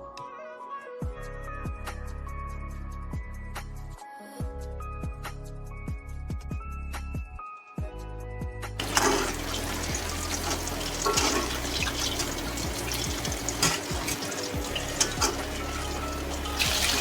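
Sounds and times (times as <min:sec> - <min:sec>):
background music with steady beat: 0:00.0 - 0:17.0
hot oil sizzling: 0:08.8 - 0:17.0.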